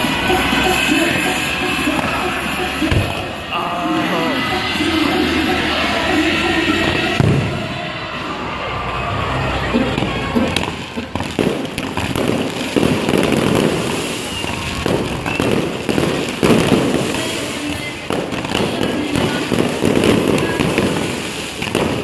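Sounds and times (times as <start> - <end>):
fireworks bangs and pops: 0.0 - 3.5, 6.9 - 7.8, 10.0 - 22.0
fireworks crackling: 0.0 - 9.0, 9.6 - 22.0.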